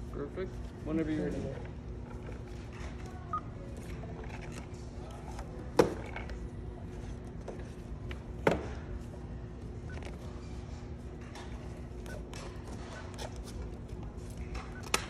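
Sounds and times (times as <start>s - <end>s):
steady low hum: 0.0s - 15.0s
payment terminal beep: 3.2s - 3.6s, 9.8s - 10.3s, 12.0s - 13.3s, 14.6s - 15.0s.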